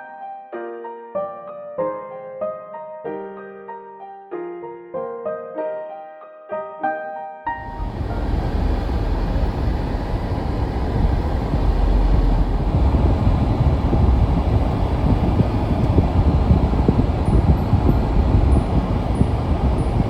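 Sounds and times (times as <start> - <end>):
car interior road and engine noise: 7.6 - 20.0.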